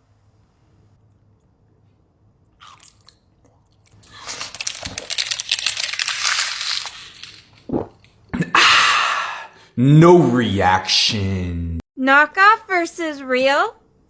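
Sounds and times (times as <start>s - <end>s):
crunching frozen food: 3.9s - 7.7s.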